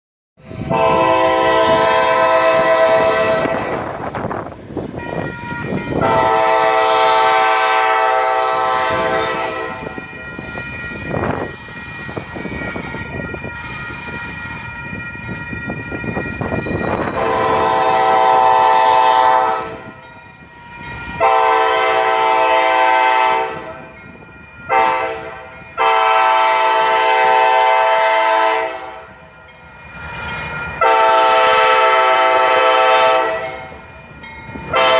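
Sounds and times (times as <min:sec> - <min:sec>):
locomotive air horn chord: 0:00.6 - 0:04.0, 0:05.1 - 0:10.0, 0:16.6 - 0:20.0, 0:21.1 - 0:23.9, 0:24.7 - 0:29.2, 0:30.8 - 0:33.8, 0:34.7 - 0:34.9.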